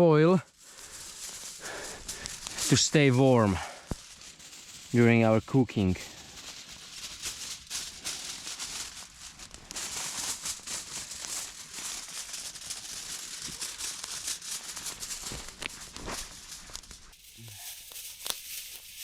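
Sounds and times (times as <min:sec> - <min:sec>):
aluminium foil crinkling: 0:00.4 - 0:19.0.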